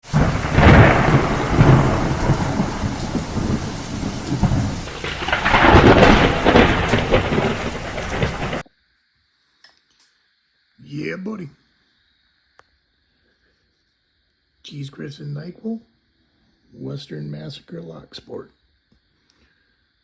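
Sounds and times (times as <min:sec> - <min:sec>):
rain: 0:00.0 - 0:08.7
rumbling thunder: 0:00.0 - 0:08.7.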